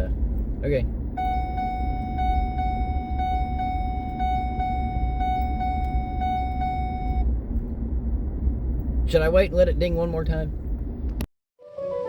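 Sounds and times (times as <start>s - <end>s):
vehicle warning chime dinging: 1.1s - 7.3s.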